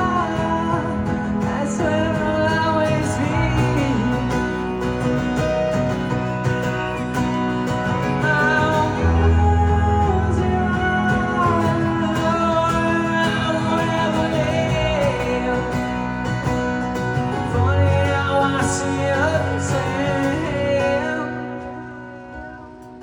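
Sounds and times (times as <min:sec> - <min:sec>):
live rock band playing: 0:00.0 - 0:23.0.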